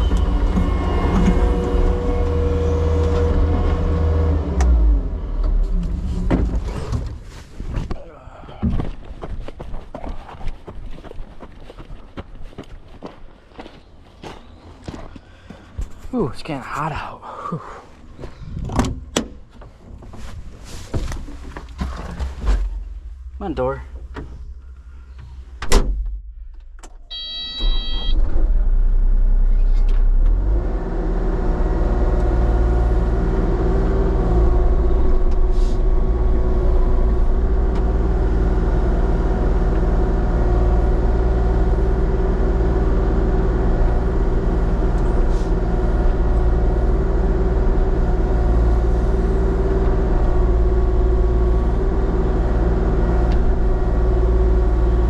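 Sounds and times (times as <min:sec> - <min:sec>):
diesel engine starting and running: 0:00.0 - 0:09.6, 0:13.0 - 0:55.0
cab door shutting: 0:25.2 - 0:26.2
short electronic beep: 0:27.1 - 0:28.3.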